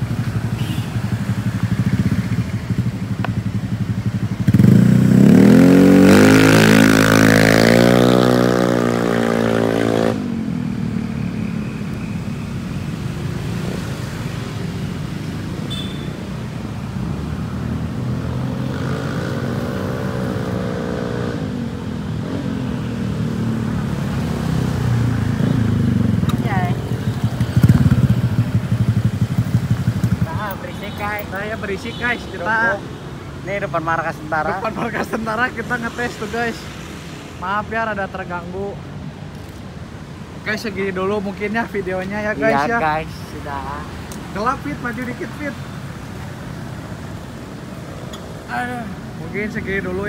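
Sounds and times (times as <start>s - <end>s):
scooter engine revving: 3.6s - 10.6s, 22.2s - 30.6s.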